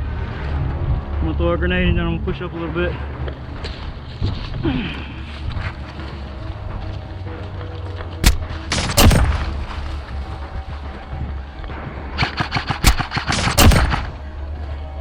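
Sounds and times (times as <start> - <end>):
steady low hum: 3.1 - 15.0
airsoft gunfire: 8.2 - 9.6, 12.2 - 14.3.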